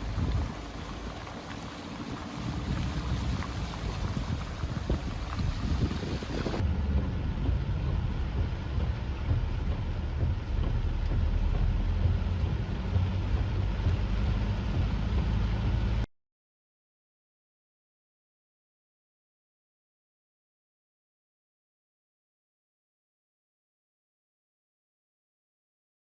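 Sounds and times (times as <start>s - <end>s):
strong wind gusts: 0.0s - 11.2s
heavy rain: 0.0s - 16.0s
wind buffeting microphone: 0.0s - 16.0s.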